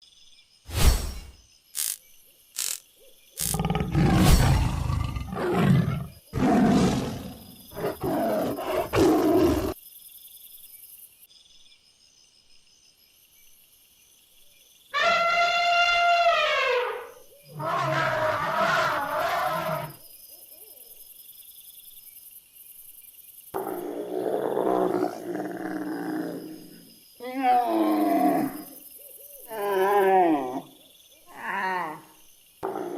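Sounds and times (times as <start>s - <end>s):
rough roar-like animal calls: 3.4s - 9.8s, 15.0s - 20.0s, 23.6s - 28.7s, 32.6s - 32.9s
long pitched animal call: 15.0s - 19.9s.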